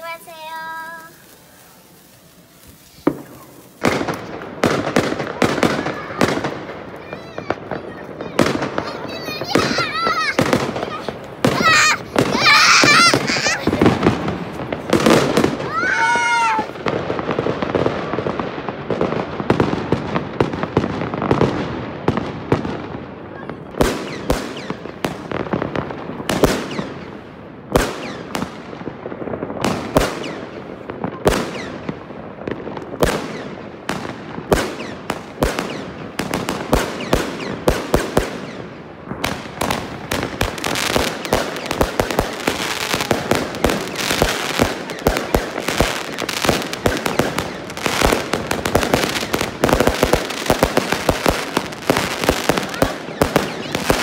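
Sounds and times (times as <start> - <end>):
firecrackers banging and crackling: 0.0 - 54.0.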